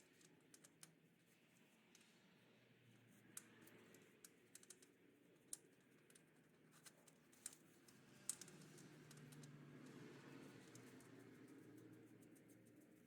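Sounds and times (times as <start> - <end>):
faint light clicks: 3.3 - 13.0.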